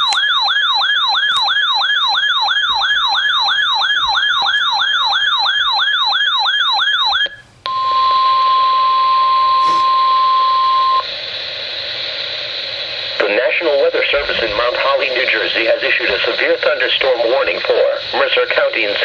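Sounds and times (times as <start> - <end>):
warbling alert siren: 0.0 - 11.1
steady warning alarm tone: 0.0 - 19.0
broadcast hiss: 7.4 - 19.0.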